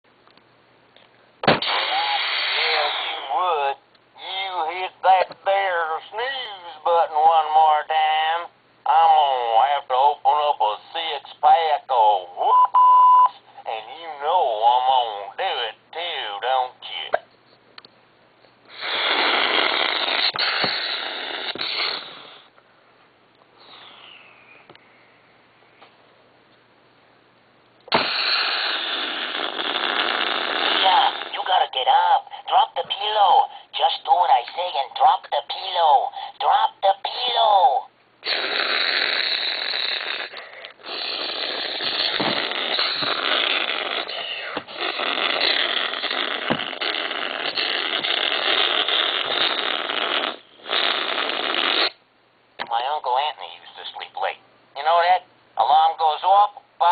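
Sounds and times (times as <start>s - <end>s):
hissing noise through tinny speaker: 1.4s - 6.8s, 18.7s - 22.5s, 27.9s - 52.0s
alarm clock hissing noise effect: 1.8s - 3.3s
alarm clock spoken lines: 30.8s - 37.9s, 52.7s - 56.9s.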